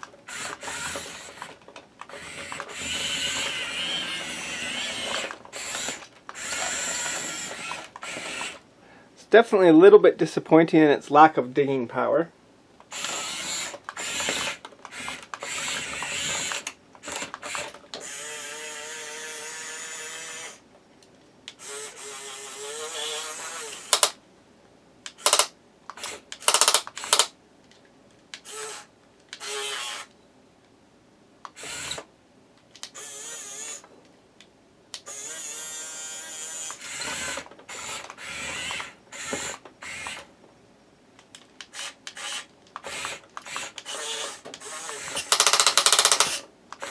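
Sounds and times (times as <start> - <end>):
small electric motors whining: 0.0 - 8.6, 12.9 - 20.6, 21.5 - 24.2, 28.4 - 30.1, 31.5 - 32.1, 32.9 - 33.9, 35.0 - 40.3, 41.6 - 46.9.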